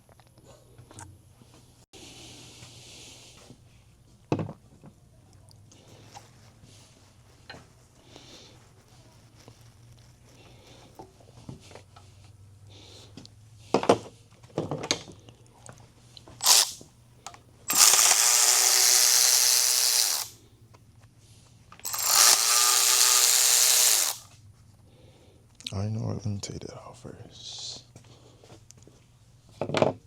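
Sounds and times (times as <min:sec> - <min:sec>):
cordless power tool spinning: 0:16.4 - 0:16.8, 0:17.7 - 0:20.4, 0:21.8 - 0:24.3.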